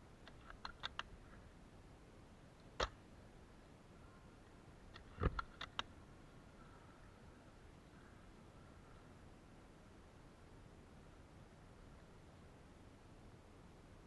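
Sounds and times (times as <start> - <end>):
sharp clicks and snaps: 0.2 - 1.1, 2.6 - 3.0, 4.9 - 5.9.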